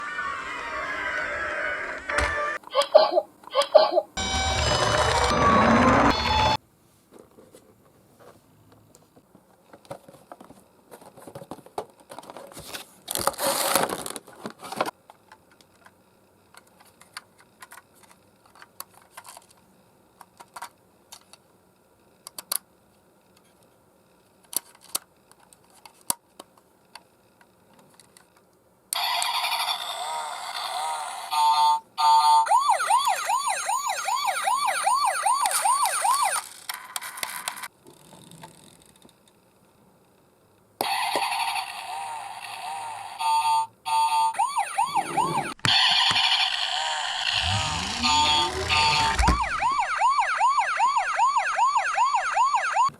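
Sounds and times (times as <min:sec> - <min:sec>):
toy electronic siren wail: 0:04.2 - 0:06.6, 0:29.0 - 0:36.5, 0:41.3 - 0:52.9
clicks and rustling from handling toy: 0:09.0 - 0:21.4, 0:24.3 - 0:28.6, 0:35.4 - 0:39.4.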